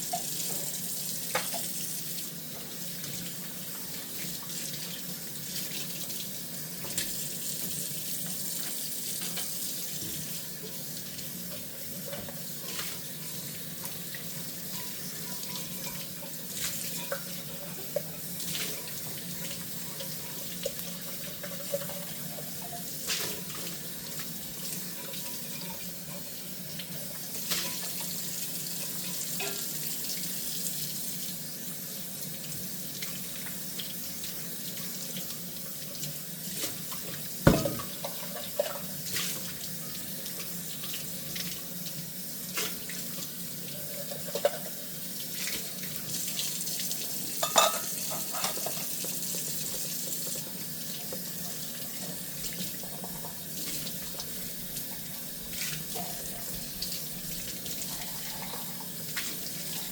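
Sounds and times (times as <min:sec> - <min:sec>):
tap running into sink: 0:01.3 - 0:01.7, 0:36.6 - 0:39.4
dishes knocking and clinking: 0:37.5 - 0:38.5, 0:47.4 - 0:48.8.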